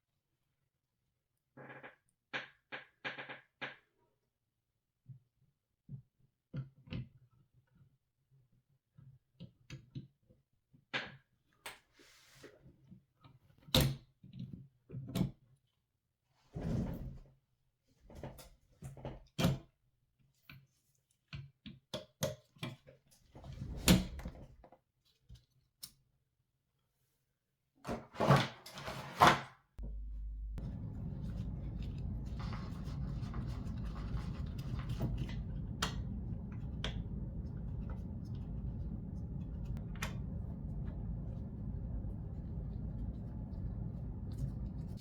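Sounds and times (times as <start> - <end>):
steady low hum: 29.8 - 45.0.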